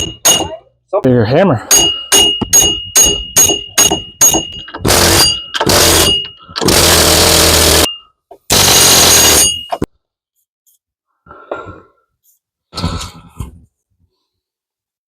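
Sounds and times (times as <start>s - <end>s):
hammer striking steel hub: 0.0s - 0.6s, 1.7s - 6.4s
harsh noise bursts: 4.8s - 7.9s, 8.5s - 9.4s.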